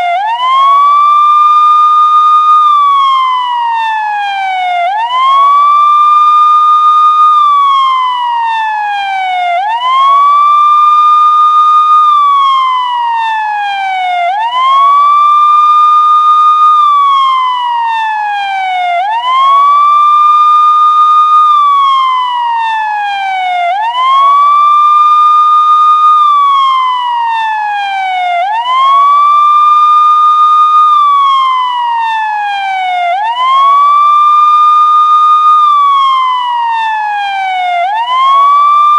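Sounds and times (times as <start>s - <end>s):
police siren wailing: 0.0s - 38.9s.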